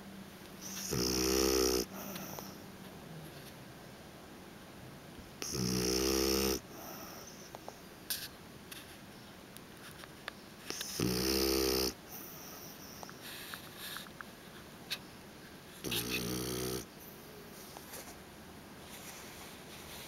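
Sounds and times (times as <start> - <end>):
dog snoring: 0.6 - 2.6, 5.4 - 7.4, 10.7 - 13.1, 15.8 - 17.0.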